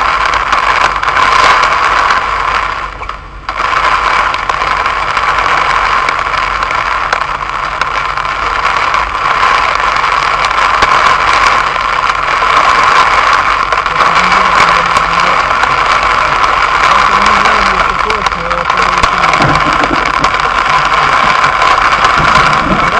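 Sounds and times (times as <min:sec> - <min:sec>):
heavy rain hissing on car: 0:00.0 - 0:22.9
raindrops tapping on car: 0:00.0 - 0:22.9.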